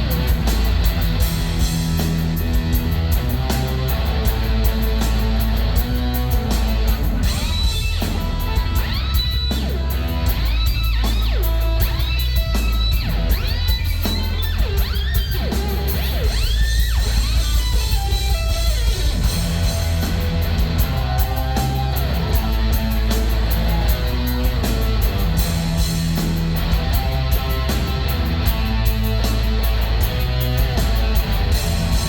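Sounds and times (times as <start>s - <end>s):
distorted electric guitar: 0.0s - 32.0s
live rock band: 0.0s - 32.0s.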